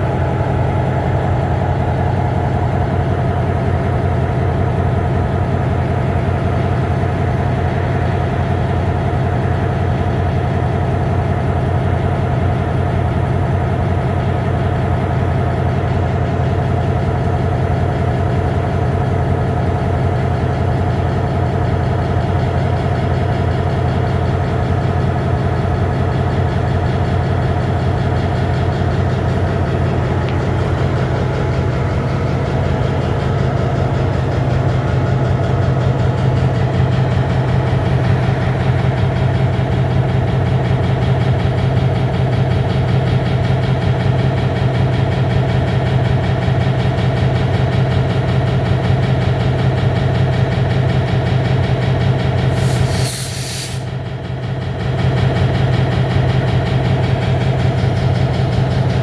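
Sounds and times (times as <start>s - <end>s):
diesel locomotive engine idling: 0.0s - 59.0s
sharp hiss: 52.5s - 53.9s.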